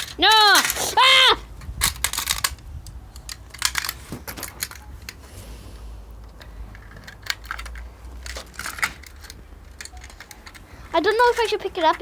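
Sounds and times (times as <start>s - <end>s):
sharp clicks and crackles: 1.6s - 5.3s, 6.1s - 12.0s.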